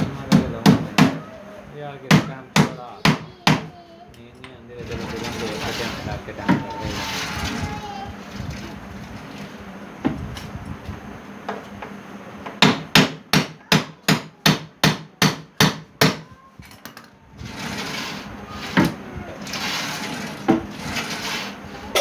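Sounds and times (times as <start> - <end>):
hammer striking wood: 0.0 - 1.2, 2.1 - 3.7, 12.5 - 16.3
scraping noise: 4.8 - 8.8, 17.4 - 22.0.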